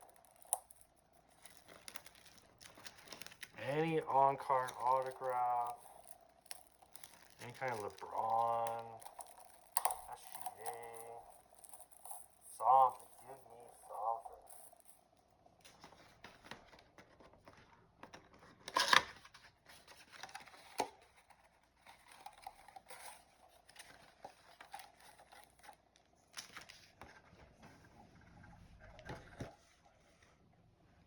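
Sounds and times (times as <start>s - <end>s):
packaging tearing: 0.0s - 13.7s
packaging crinkling and rustling: 0.0s - 14.9s, 15.6s - 27.2s.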